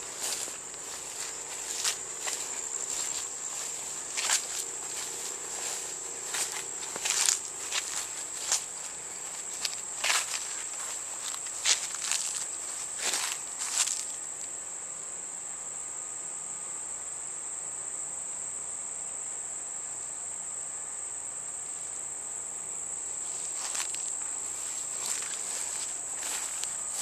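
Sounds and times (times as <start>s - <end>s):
footsteps: 0.0s - 14.2s, 23.2s - 27.0s
high-pitched insect chorus: 0.0s - 27.0s.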